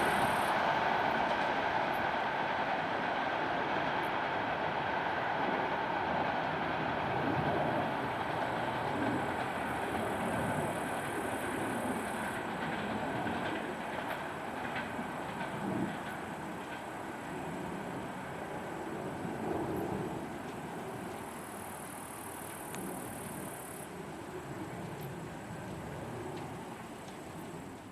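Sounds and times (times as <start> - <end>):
train rumbling on track: 0.0 - 27.9.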